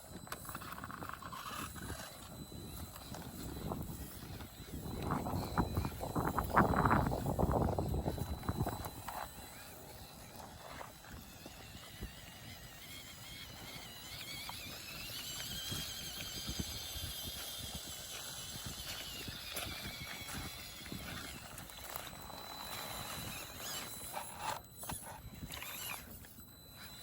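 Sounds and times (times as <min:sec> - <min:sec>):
electric motor and gears whining: 0:00.0 - 0:27.0.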